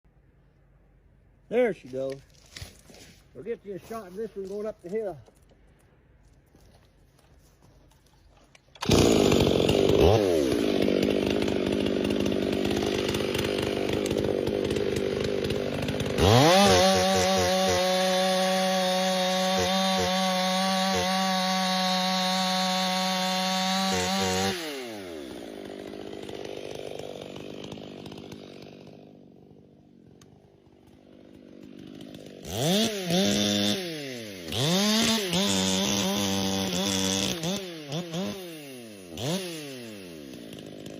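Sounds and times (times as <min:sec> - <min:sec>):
chainsaw cutting a tree: 0:08.7 - 0:40.9.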